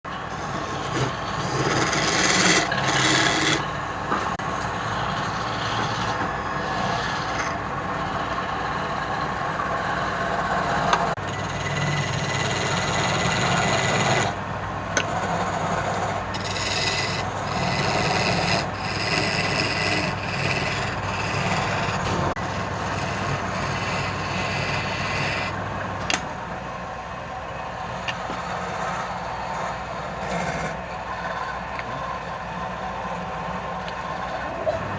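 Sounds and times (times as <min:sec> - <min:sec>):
turning tool scraping wood: 0:00.1 - 0:04.3, 0:05.0 - 0:07.6, 0:10.6 - 0:14.4, 0:15.0 - 0:25.6, 0:28.4 - 0:30.8
lathe motor hum: 0:00.1 - 0:34.9.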